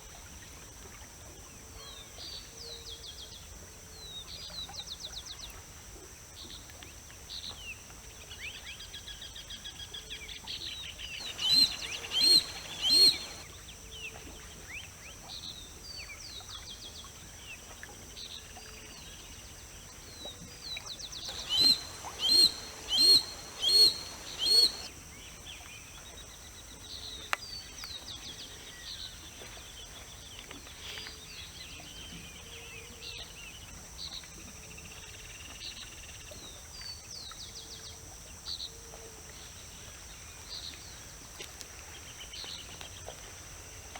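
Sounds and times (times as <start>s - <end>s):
hawk calling: 11.2s - 13.4s, 21.3s - 24.9s
small birds chirping: 11.2s - 13.4s, 21.3s - 24.9s
high insect hum: 11.2s - 13.6s, 21.3s - 24.9s.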